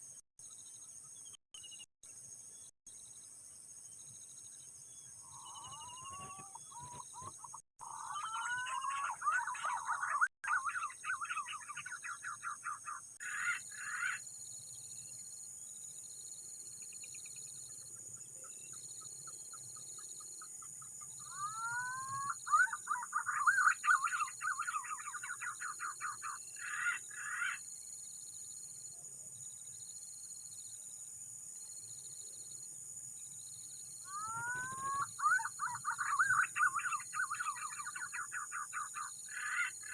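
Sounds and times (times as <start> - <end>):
bird calling: 5.2 - 14.2, 21.0 - 27.6, 34.1 - 39.9.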